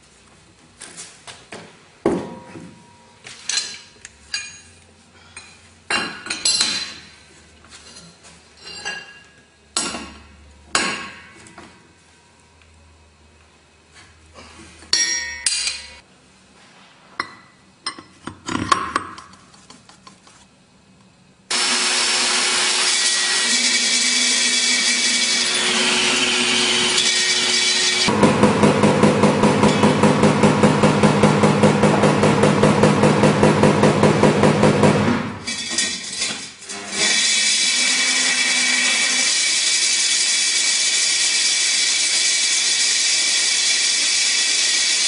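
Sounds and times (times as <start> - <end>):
core drill cutting concrete: 21.5 - 28.2, 36.7 - 45.0.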